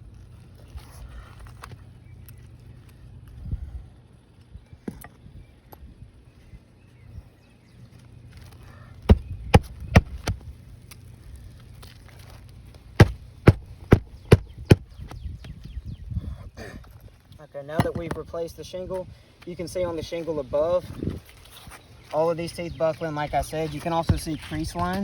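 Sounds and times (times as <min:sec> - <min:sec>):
hammer driving nails: 0:09.1 - 0:10.4, 0:13.0 - 0:14.8.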